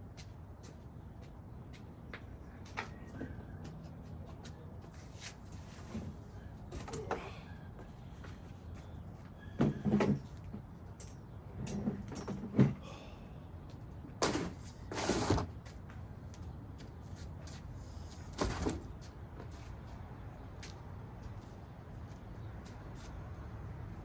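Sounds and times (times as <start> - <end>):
clunks and knocks: 9.6 - 10.7.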